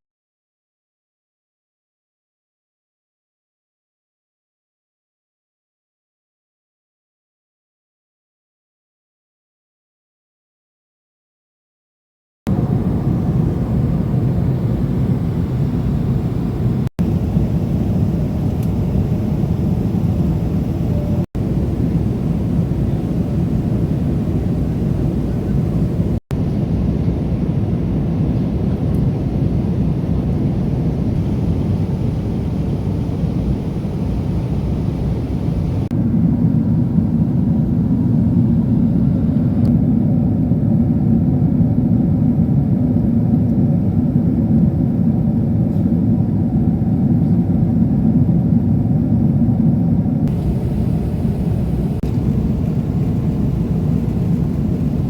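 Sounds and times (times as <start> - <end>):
airplane engines rumbling in cabin: 12.5 - 55.0.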